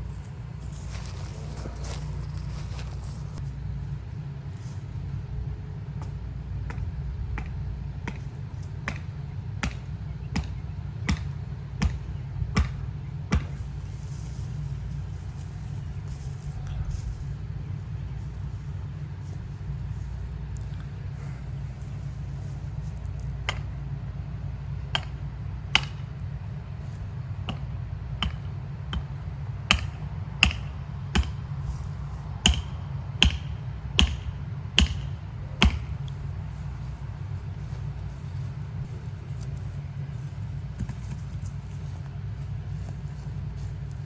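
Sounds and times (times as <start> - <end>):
low steady rumble: 0.0 - 44.0
sharp knocks: 6.0 - 13.9, 24.9 - 26.2, 27.5 - 31.5, 32.4 - 36.1.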